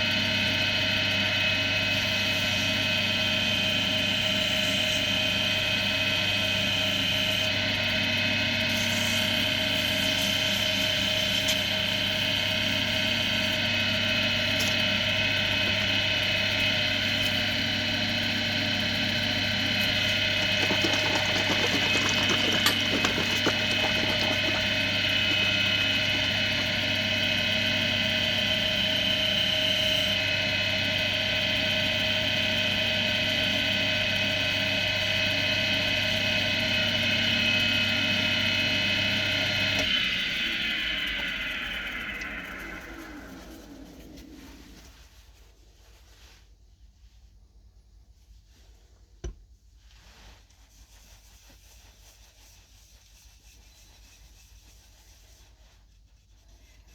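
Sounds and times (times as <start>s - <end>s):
lathe motor hum and whine: 0.0s - 45.2s
turning tool scratching wood: 19.8s - 27.6s.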